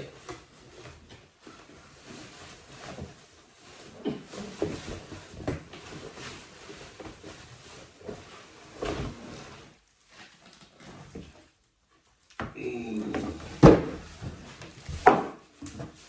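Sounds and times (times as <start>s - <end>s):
cardboard box rustling and scraping: 0.3s - 11.5s.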